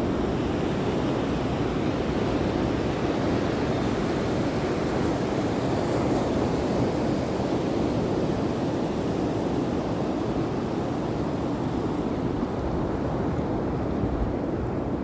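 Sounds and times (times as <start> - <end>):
wind rumbling on microphone: 0.0 - 15.0.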